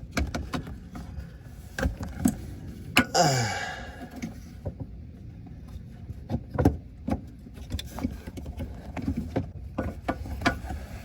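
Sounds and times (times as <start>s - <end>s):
plastic parts clicking and knocking: 0.0s - 1.1s.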